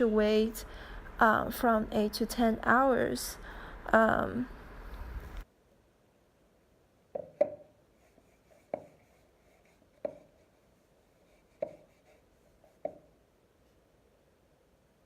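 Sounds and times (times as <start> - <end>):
sharp taps on hard surface: 7.2 - 7.7, 11.6 - 11.8, 12.8 - 13.1.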